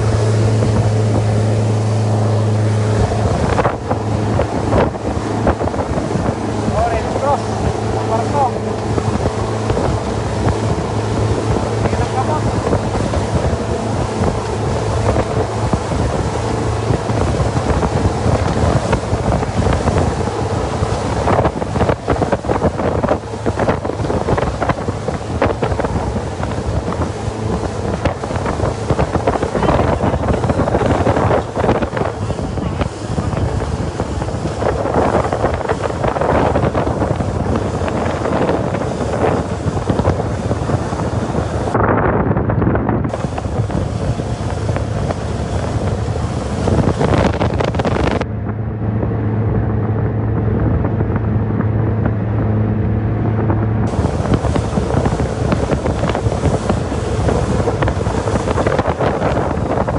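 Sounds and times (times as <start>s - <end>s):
boat engine running: 0.0s - 59.9s
wind buffeting microphone: 0.0s - 59.9s.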